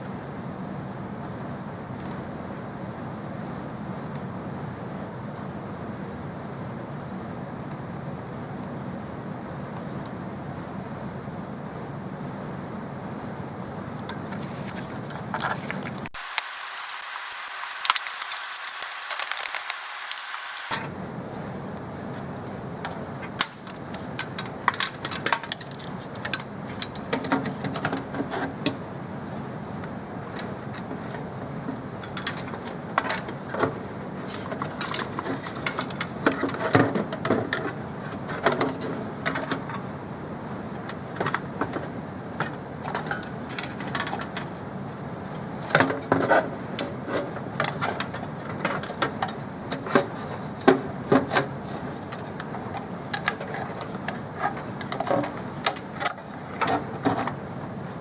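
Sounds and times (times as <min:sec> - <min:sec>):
steady background noise: 0:00.0 - 0:58.0.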